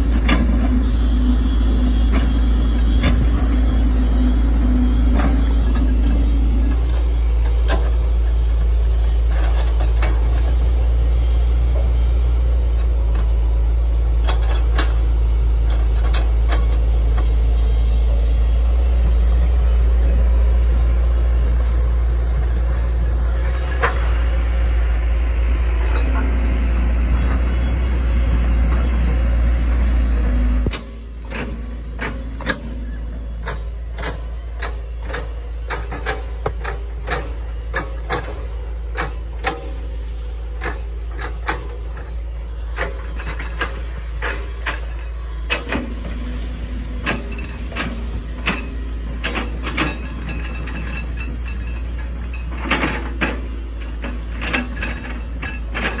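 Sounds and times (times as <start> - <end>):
excavator diesel engine droning: 0.0 - 56.0
sharp clicks and knocks: 33.4 - 39.8.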